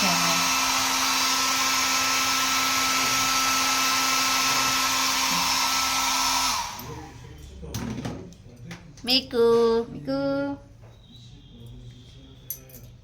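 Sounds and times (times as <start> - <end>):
hair dryer running: 0.0 - 7.2.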